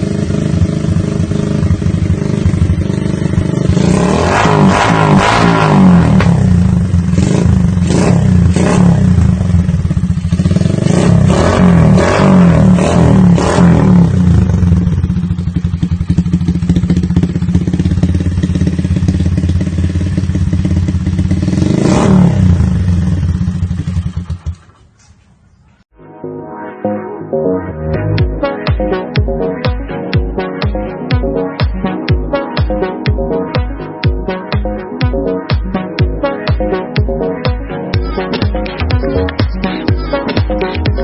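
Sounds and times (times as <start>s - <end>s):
motorcycle idling and revving: 0.0s - 25.6s.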